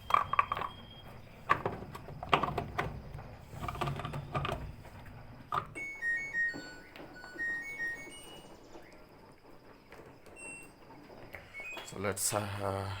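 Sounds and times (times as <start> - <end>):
plastic clicks and knocks: 1.5 - 5.8.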